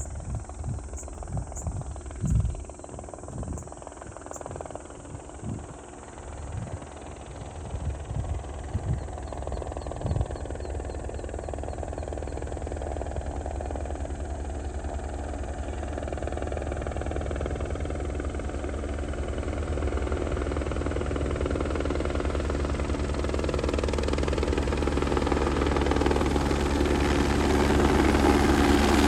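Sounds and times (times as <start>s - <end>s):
helicopter rotor beating: 0.0s - 18.4s, 19.9s - 29.0s.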